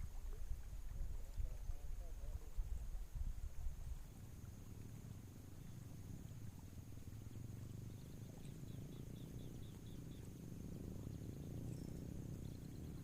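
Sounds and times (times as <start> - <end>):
insects droning: 0.0 - 13.0
low steady rumble: 0.0 - 13.0.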